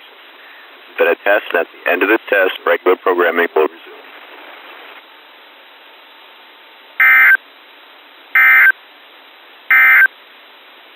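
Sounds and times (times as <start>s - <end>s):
radio hiss: 0.3s - 5.0s.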